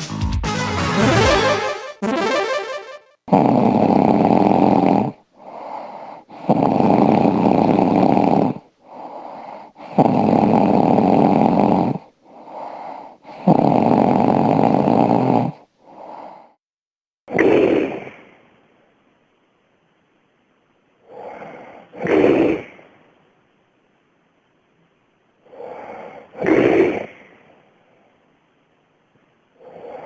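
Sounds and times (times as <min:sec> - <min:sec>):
woman snoring: 0:03.3 - 0:16.6, 0:29.6 - 0:30.0.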